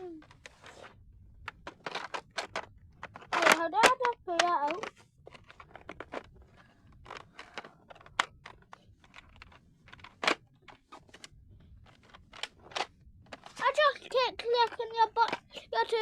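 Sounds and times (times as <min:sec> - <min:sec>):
plastic toy blaster clicks: 0:03.2 - 0:04.9.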